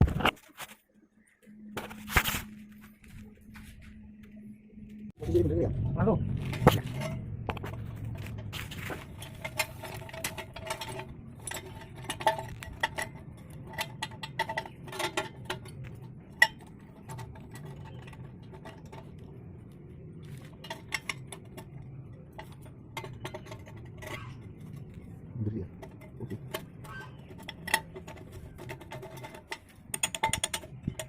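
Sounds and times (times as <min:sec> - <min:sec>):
small metallic clinks and knocks: 0:06.5 - 0:31.0.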